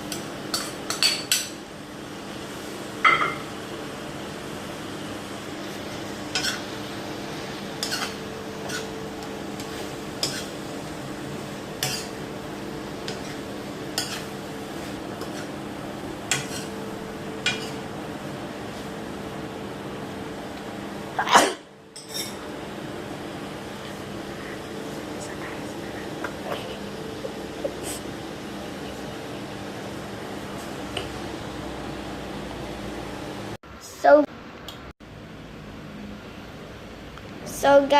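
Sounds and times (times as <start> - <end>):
steady hum: 0.0 - 37.9
utensil scraping a pan: 7.8 - 9.0, 9.6 - 10.6, 11.8 - 12.2.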